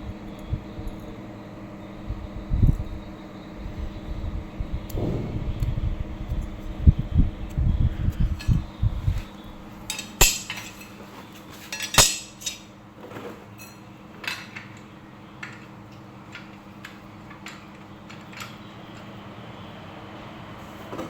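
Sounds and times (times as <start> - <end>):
faint steady hum: 0.0 - 13.0
metal tools clinking and knocking: 9.9 - 11.0, 11.6 - 12.7.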